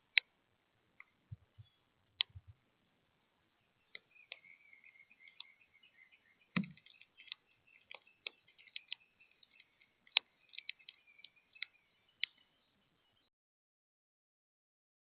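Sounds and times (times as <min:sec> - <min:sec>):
faint bird chirps: 0:01.0 - 0:02.6, 0:03.5 - 0:13.3
birds tapping at seed feeder: 0:03.9 - 0:05.8, 0:06.5 - 0:12.5.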